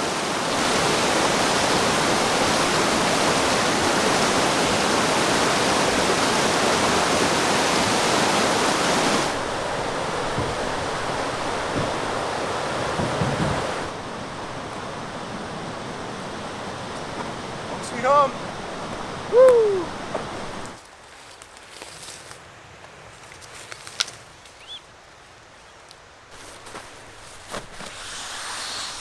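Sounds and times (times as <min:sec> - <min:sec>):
river rapids rushing: 0:00.0 - 0:20.8
faint low knocks: 0:09.4 - 0:14.0.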